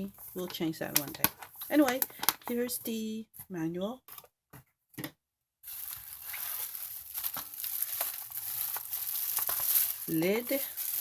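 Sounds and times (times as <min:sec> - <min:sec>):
packaging crinkling and rustling: 0:05.6 - 0:11.0.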